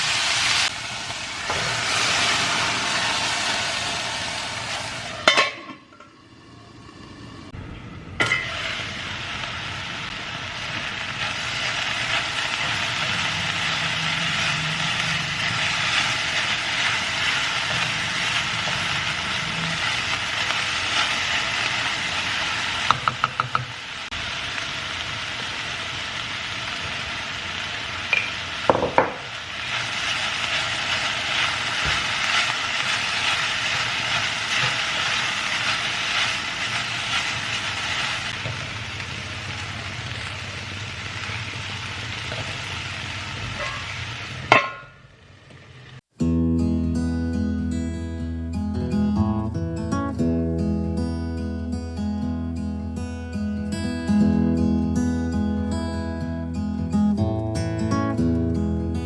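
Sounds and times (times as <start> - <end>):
food sizzling in a pan: 0.0 - 46.1
metal utensil tapping a pan: 22.9 - 23.7, 28.1 - 29.2.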